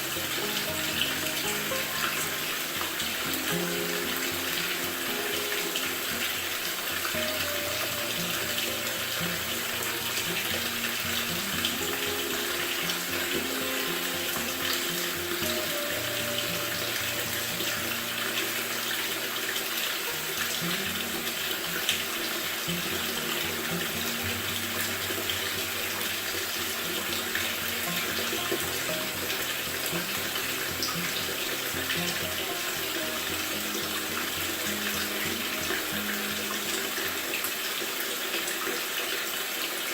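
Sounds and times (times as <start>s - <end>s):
soft background music: 0.0s - 38.6s
water rushing into washer tub: 0.0s - 39.9s.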